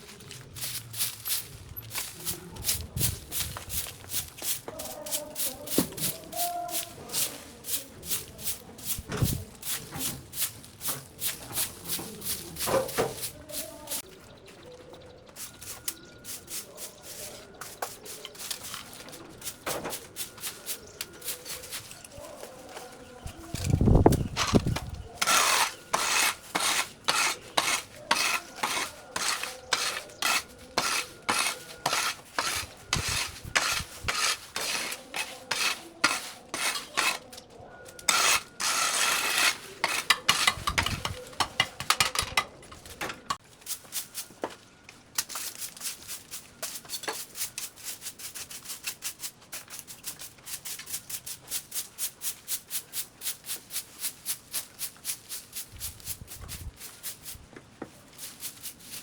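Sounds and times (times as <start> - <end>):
rhythmic scraping strokes: 23.3 - 43.4.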